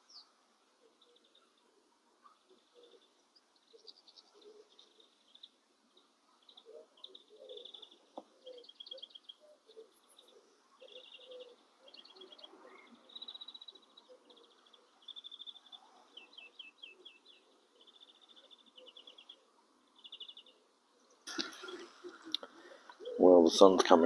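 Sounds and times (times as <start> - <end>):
songbird trilling: 6.4 - 23.4.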